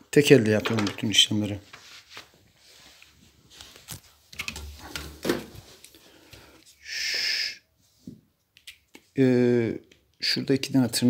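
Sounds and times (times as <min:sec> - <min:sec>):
plastic parts clicking and knocking: 0:00.5 - 0:01.3.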